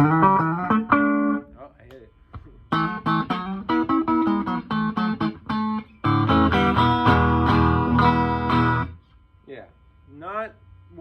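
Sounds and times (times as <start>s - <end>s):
electric guitar strummed chords: 0.0s - 1.5s, 2.7s - 9.0s
electric guitar picked notes: 0.0s - 1.6s, 2.6s - 9.0s.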